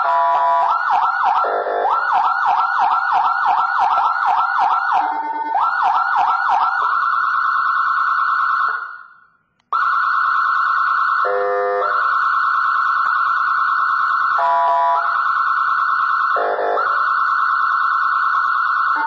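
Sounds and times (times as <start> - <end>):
electronic siren warbling: 14.2 - 15.4, 16.0 - 19.0.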